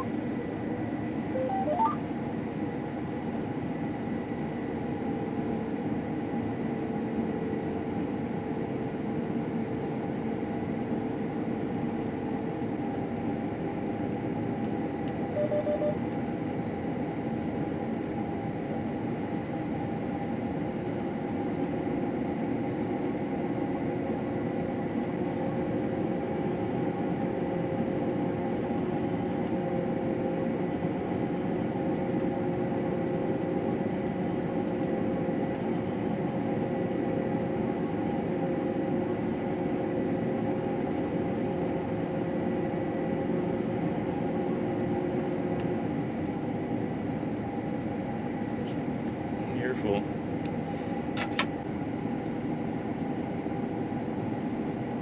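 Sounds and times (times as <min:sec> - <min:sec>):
short electronic beep: 0:01.4 - 0:02.0, 0:15.4 - 0:16.0.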